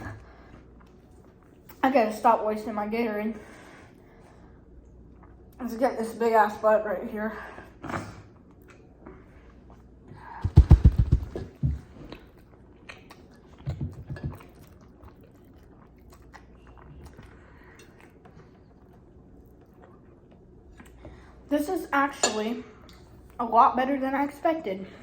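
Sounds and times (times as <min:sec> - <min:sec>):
person chewing and smacking: 0:11.6 - 0:21.1.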